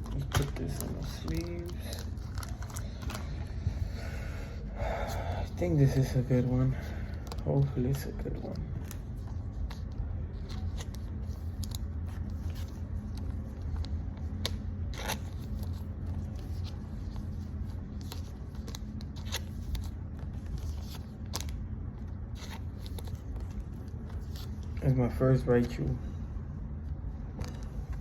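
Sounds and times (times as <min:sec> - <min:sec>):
foil wrapper crinkling: 0:00.0 - 0:03.4
steady low hum: 0:00.0 - 0:28.0.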